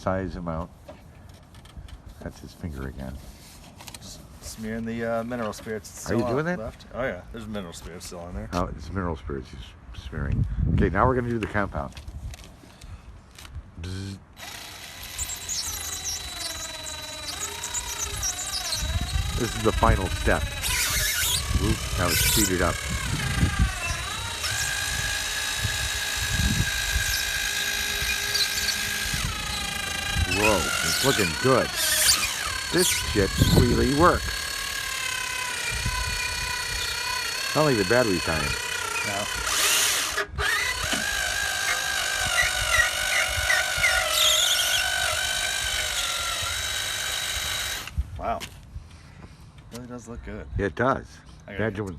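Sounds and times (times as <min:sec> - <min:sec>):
cordless drill motor whine: 0:14.4 - 0:48.0
polishing pad buffing plastic: 0:15.1 - 0:24.7, 0:27.1 - 0:34.0.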